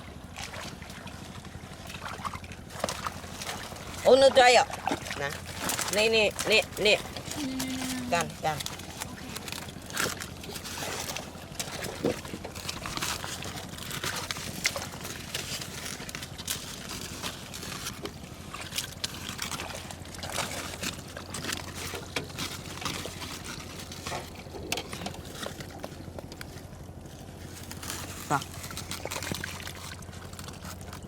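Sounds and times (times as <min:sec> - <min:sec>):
water splashing and sloshing: 0:00.0 - 0:31.0.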